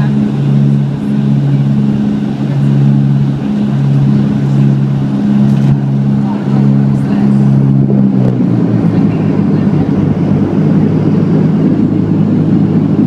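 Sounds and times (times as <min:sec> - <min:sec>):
low pitched hum: 0:00.0 - 0:13.0
rushing road noise: 0:00.0 - 0:13.0
vehicle engine drone: 0:00.0 - 0:13.0.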